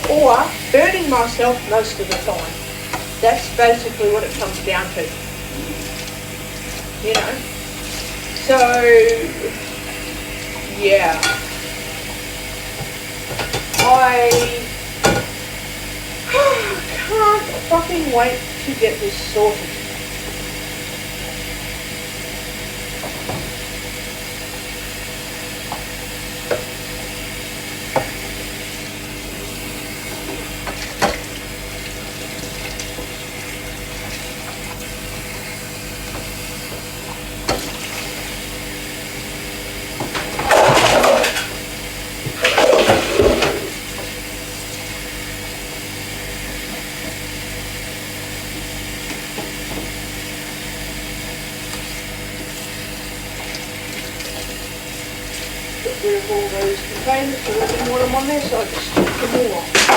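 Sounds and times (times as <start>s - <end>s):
steady hum: 0.0s - 32.8s
tap water gushing: 0.0s - 59.9s.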